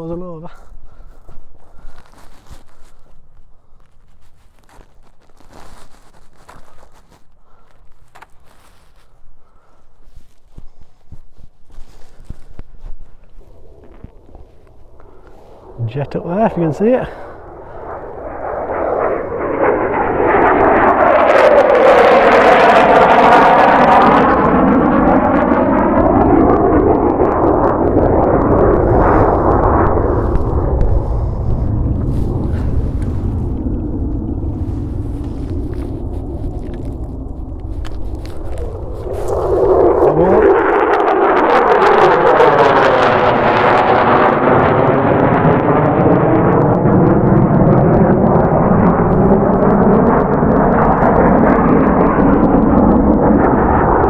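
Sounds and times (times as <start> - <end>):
jet aircraft roaring overhead: 13.5 - 54.0.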